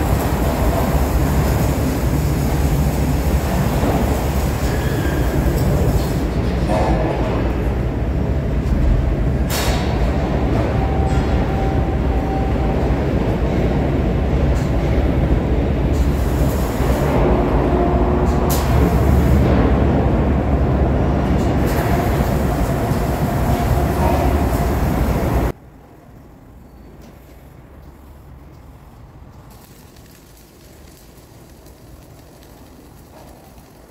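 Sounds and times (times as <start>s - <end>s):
arc welding: 0.0s - 6.4s, 14.6s - 19.9s, 20.6s - 25.6s, 27.8s - 33.9s.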